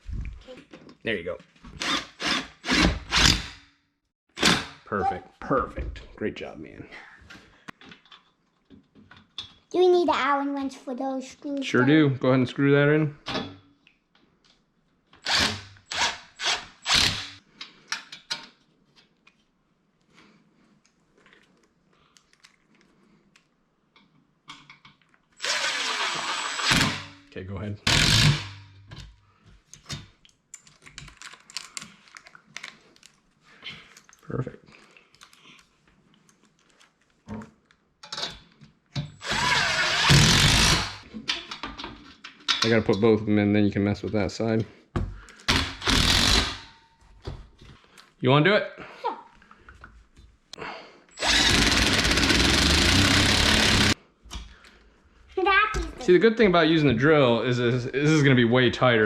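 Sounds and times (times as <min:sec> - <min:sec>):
screw rasping into wood panel: 0:39.2 - 0:41.0, 0:45.5 - 0:46.7, 0:51.2 - 0:54.0.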